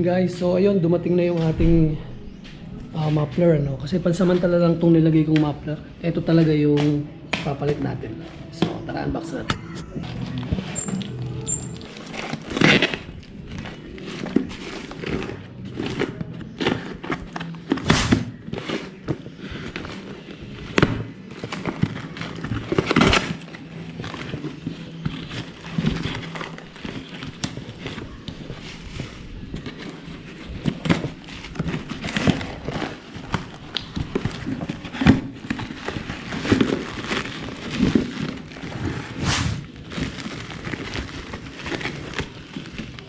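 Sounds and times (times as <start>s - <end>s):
packaging rustling and crinkling: 10.0s - 43.0s.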